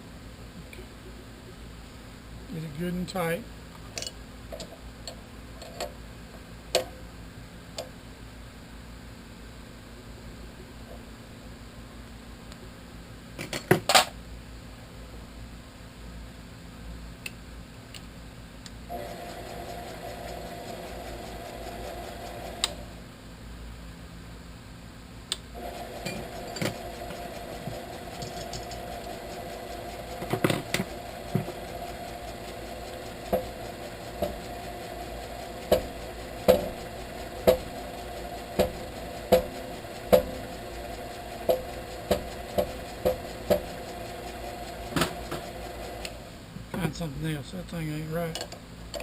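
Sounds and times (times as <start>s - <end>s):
milling machine motor humming: 18.9s - 23.0s, 25.6s - 46.3s.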